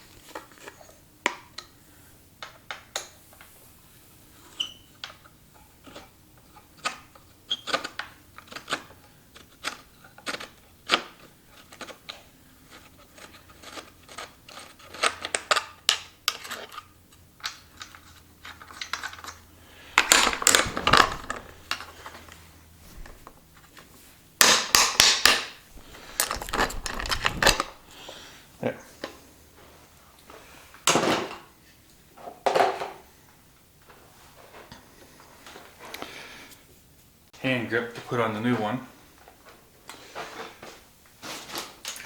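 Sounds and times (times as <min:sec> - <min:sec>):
rubbing and rattling: 0:17.8 - 0:23.8, 0:25.7 - 0:28.0.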